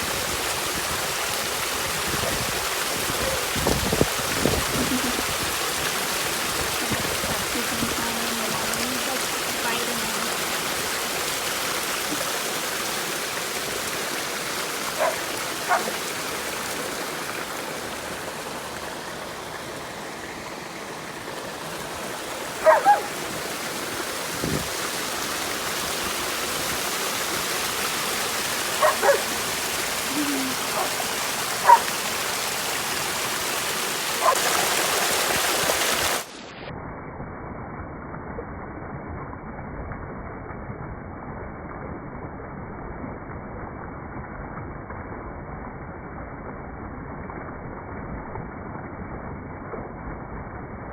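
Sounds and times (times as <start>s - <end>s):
creek water rushing: 0.0s - 36.6s.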